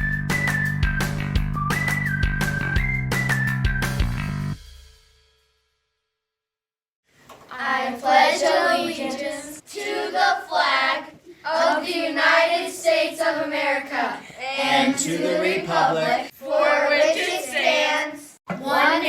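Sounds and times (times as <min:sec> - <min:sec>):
children singing together: 0:07.5 - 0:19.0.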